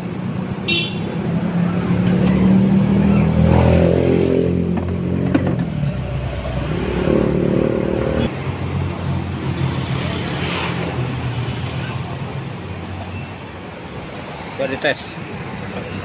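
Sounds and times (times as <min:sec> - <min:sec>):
scooter engine revving: 0:01.3 - 0:08.3.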